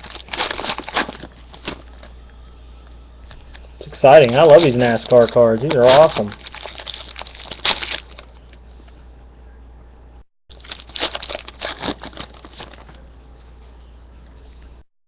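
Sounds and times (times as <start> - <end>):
foil wrappers crinkling: 0.0 - 2.2, 3.4 - 8.6, 10.5 - 13.1.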